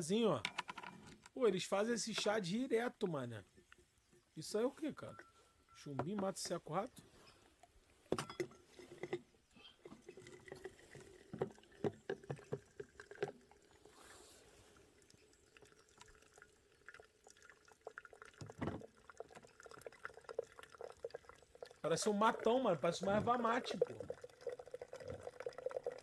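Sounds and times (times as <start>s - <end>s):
pots and cups clinking: 5.0s - 6.6s, 8.1s - 13.4s
liquid pouring: 9.8s - 26.0s.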